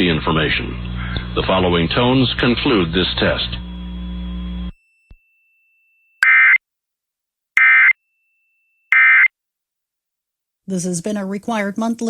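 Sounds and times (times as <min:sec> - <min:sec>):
steady hum: 0:00.0 - 0:04.7
screechy digital data tones: 0:06.2 - 0:06.6, 0:07.6 - 0:08.0, 0:08.9 - 0:09.3.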